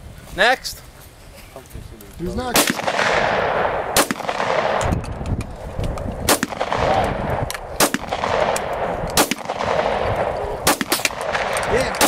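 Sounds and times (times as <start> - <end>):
gunshots with rolling echo: 2.4 - 5.2, 5.8 - 12.0
fainter gunshot cracks: 2.6 - 4.9, 6.3 - 12.0.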